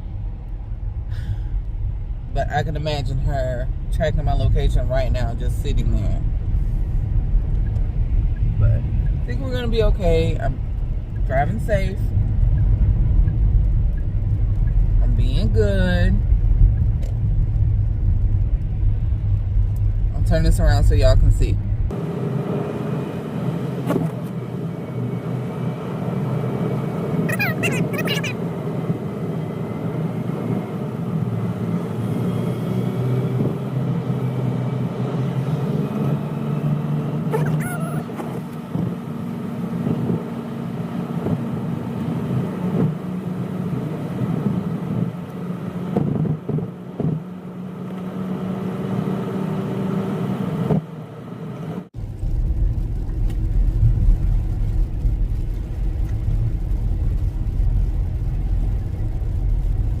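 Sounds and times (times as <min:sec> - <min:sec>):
deeper rumble: 0:00.0 - 0:22.0, 0:52.0 - 1:00.0
car interior engine and road hum: 0:00.0 - 1:00.0.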